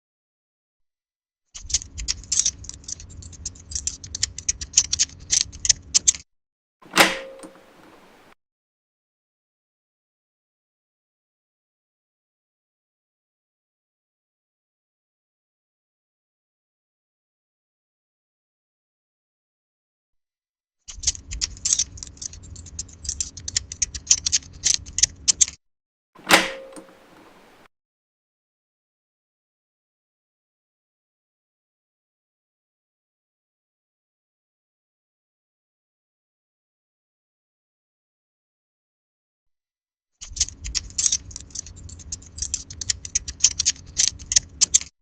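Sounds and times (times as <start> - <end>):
lock picks clicking and scraping: 1.6 - 6.2, 20.9 - 25.6, 26.2 - 27.7, 40.2 - 44.9.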